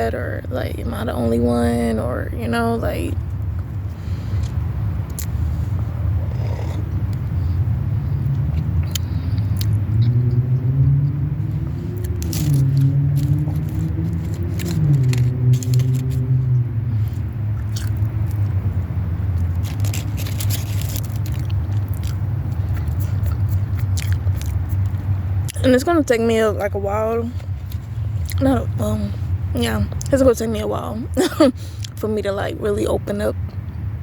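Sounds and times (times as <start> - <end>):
low rumble: 0.0 - 31.6
pitched hum: 0.0 - 32.6
crunchy chewing: 11.5 - 25.6.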